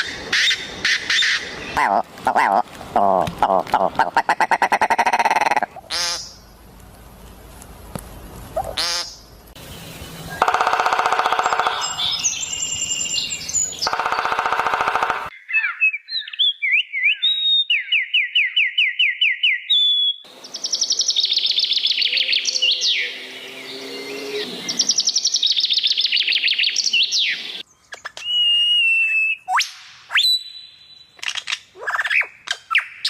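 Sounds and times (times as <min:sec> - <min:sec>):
birds chirping and trilling: 0:00.0 - 0:06.6, 0:08.6 - 0:28.4, 0:30.2 - 0:33.0
buzzy animal call: 0:01.8 - 0:06.2.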